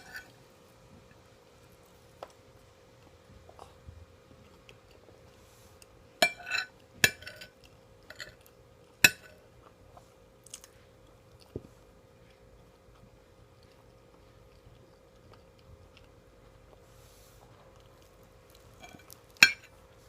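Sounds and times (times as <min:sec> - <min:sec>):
quiet chewing: 0:01.0 - 0:06.1, 0:06.7 - 0:20.0
spoon clinking and scraping plate: 0:06.2 - 0:08.4.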